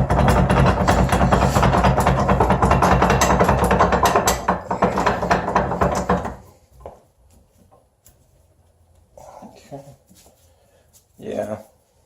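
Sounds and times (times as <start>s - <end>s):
rapid irregular clicking: 0.0s - 6.4s.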